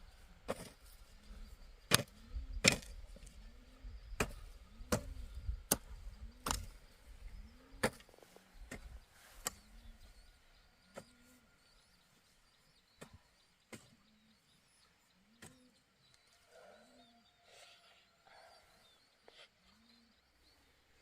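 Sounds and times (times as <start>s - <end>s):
blade chopping wood: 1.9s - 3.0s.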